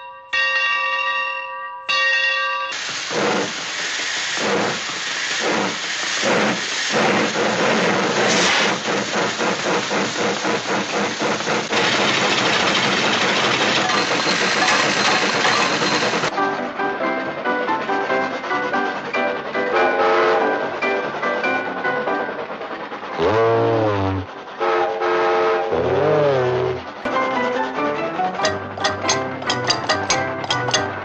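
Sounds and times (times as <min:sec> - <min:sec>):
steam locomotive chuffing: 0:02.7 - 0:31.0
bell ringing: 0:13.7 - 0:16.3, 0:28.4 - 0:31.0.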